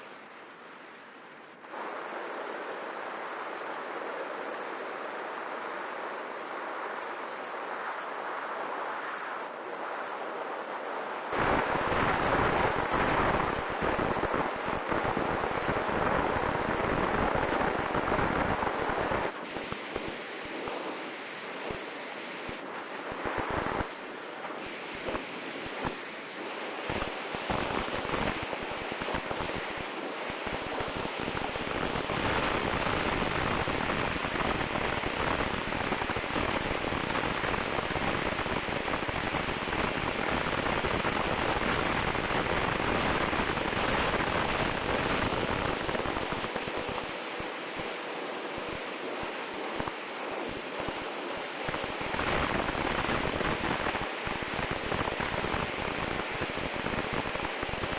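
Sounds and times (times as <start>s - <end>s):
faint steady whine: 0.0s - 57.9s
wind buffeting microphone: 1.6s - 57.9s.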